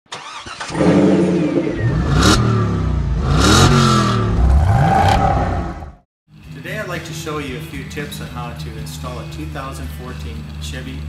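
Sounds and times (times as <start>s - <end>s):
car engine revving: 0.2s - 6.0s.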